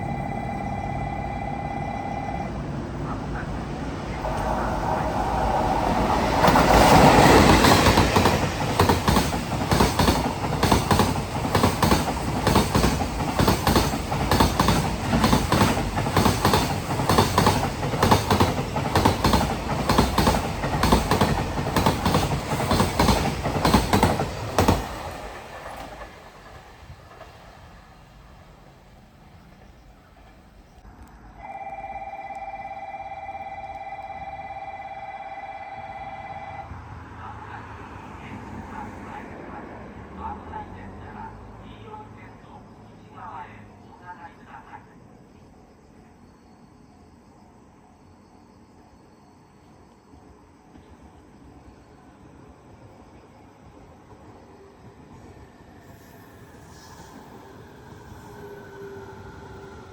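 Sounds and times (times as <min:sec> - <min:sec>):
train wheels clattering over rail joints: 0:05.8 - 0:30.8.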